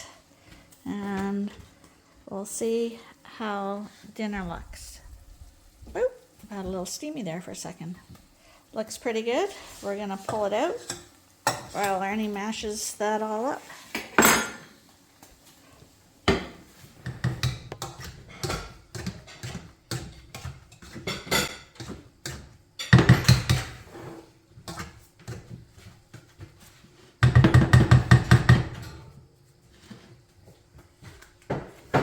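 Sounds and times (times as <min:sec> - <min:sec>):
pans and utensils clattering: 0:13.9 - 0:14.8, 0:16.3 - 0:25.6
potato masher knocking in pot: 0:16.3 - 0:23.8, 0:27.2 - 0:28.9.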